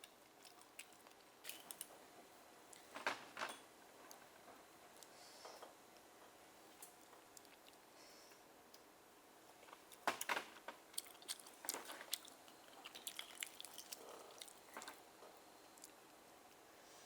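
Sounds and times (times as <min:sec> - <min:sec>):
person eating oysters: 0:00.2 - 0:01.8, 0:10.9 - 0:15.0.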